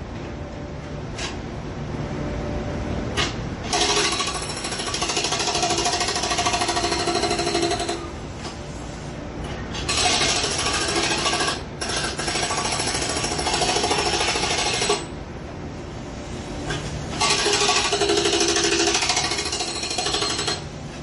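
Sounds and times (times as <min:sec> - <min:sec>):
jackhammer hammering: 0:03.7 - 0:08.1, 0:17.2 - 0:20.6.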